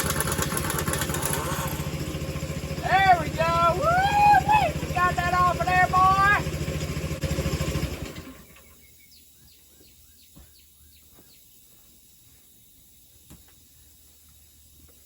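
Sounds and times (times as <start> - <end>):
faint bird chirps: 8.4 - 15.0.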